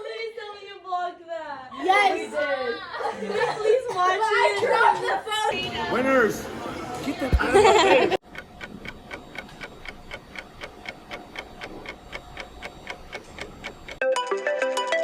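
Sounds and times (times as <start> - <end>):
clock ticking: 8.2 - 14.0
ringtone melody: 14.0 - 15.0.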